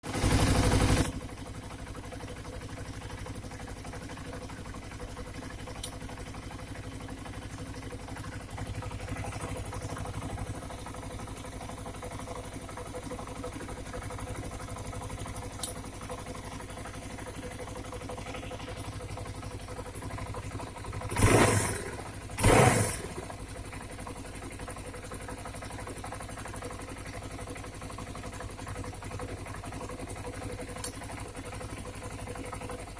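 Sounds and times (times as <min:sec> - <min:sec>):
engine knock: 0:00.0 - 0:32.9
motorcycle engine idling: 0:00.0 - 0:32.9
engine bursts: 0:21.0 - 0:23.4.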